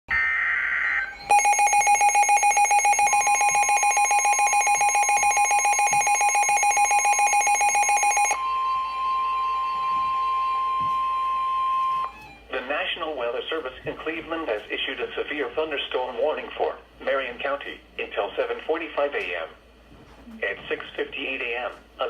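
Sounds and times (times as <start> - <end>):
steady warning alarm tone: 0.2 - 12.2
rapidly pulsing alarm beep: 1.2 - 12.1.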